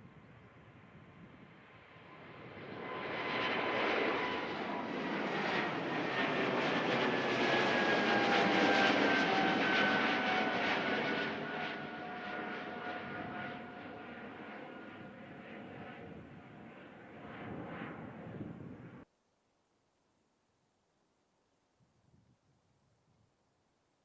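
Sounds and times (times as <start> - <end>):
airliner engines at takeoff: 0.0 - 19.0
jet engine whine falling in pitch: 2.0 - 19.0.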